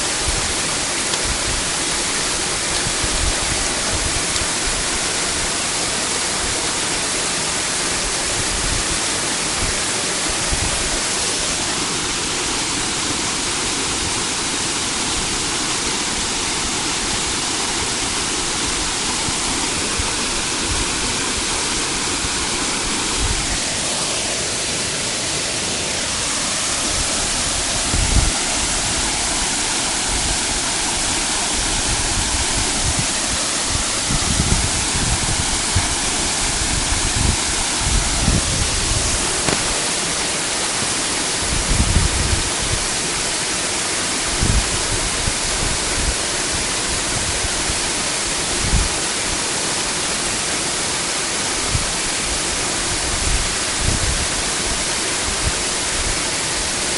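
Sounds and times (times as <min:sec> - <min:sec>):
waterfall rushing: 0:00.0 - 0:56.9
short low thump: 0:39.0 - 0:39.9.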